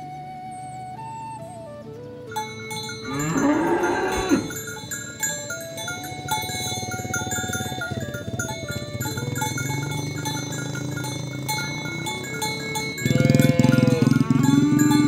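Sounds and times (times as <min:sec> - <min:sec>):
light background music: 0:00.0 - 0:15.0
cow mooing: 0:03.0 - 0:05.3, 0:06.3 - 0:15.0.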